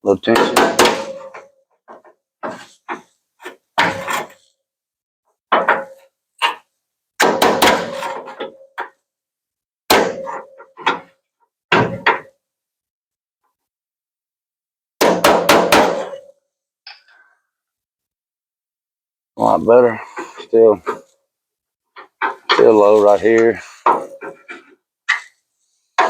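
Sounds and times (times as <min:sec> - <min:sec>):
hammer striking sheet metal: 0:00.3 - 0:01.4, 0:09.9 - 0:10.5, 0:15.0 - 0:16.3.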